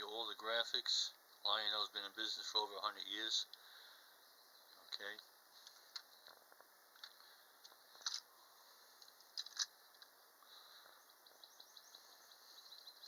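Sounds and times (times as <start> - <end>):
faint handling clicks and scratches: 4.9 - 8.3.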